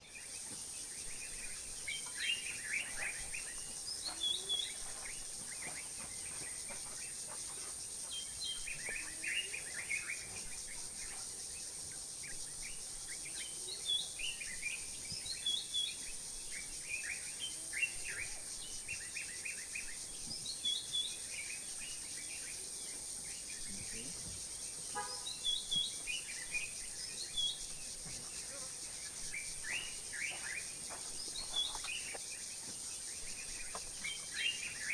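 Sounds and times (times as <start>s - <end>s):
birds chirping and trilling: 15.3s - 34.9s.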